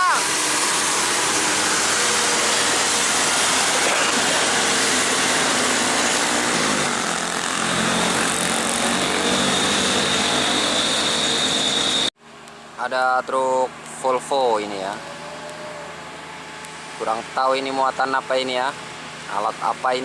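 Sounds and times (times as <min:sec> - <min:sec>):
heavy truck engines droning: 0:00.0 - 0:12.1
road and traffic noise: 0:00.3 - 0:20.0.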